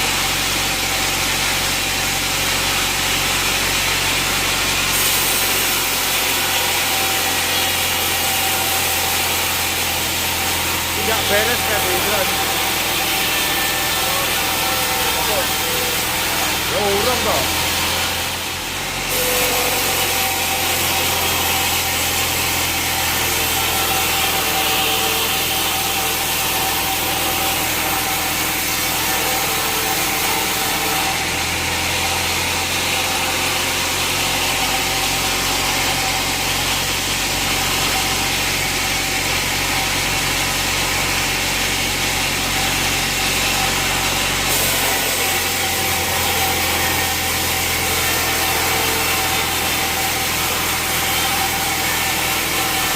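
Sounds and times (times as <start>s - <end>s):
saw blade cutting wood: 0.0s - 52.9s
blade whine: 5.1s - 22.5s.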